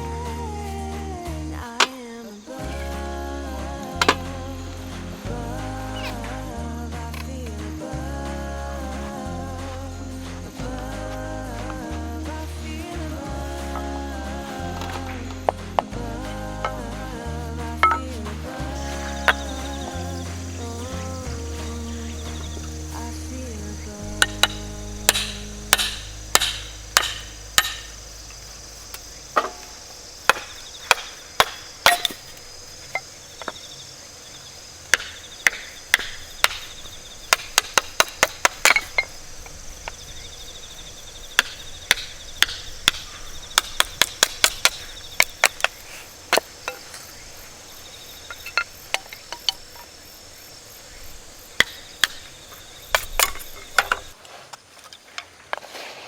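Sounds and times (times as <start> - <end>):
faint insect trill: 0.0 - 54.2
sharp chopping knocks: 24.2 - 28.0.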